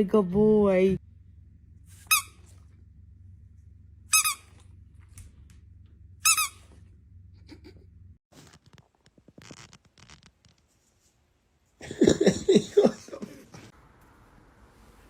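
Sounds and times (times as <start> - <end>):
low steady hum: 0.0 - 8.6.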